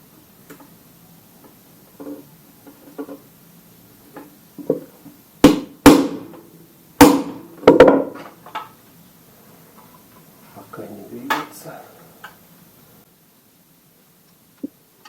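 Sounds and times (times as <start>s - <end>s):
hammer striking center punch: 5.4s - 6.4s, 7.0s - 8.2s.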